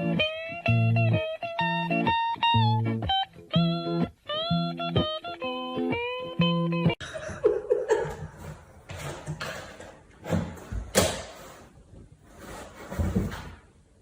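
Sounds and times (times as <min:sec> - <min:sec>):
plucked guitar music: 0:00.0 - 0:07.0.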